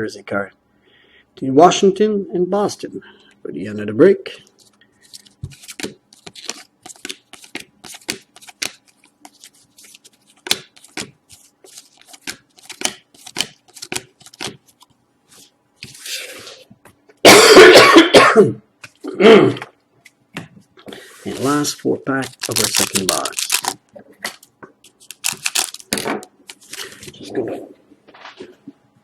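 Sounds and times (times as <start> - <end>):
card packs crinkling: 5.0 - 14.9, 21.2 - 27.3
man coughing hard: 17.2 - 18.6.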